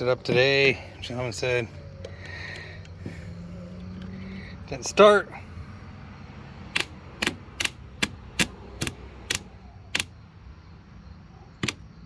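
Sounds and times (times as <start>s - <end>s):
starter solenoid clicking: 6.7s - 10.1s, 11.6s - 11.8s.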